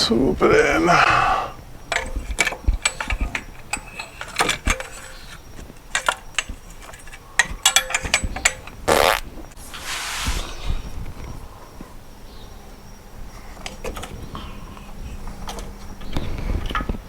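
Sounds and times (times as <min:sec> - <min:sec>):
metal tools clicking and knocking: 0:01.8 - 0:08.9, 0:13.6 - 0:17.0
soft hiss: 0:08.9 - 0:13.6.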